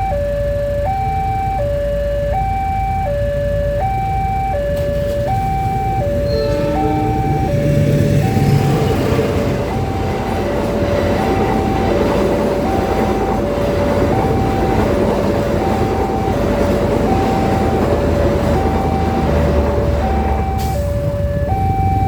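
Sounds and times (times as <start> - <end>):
two-tone level-crossing signal: 2.4 - 10.4, 18.6 - 22.0
train rolling on rails: 4.5 - 22.0.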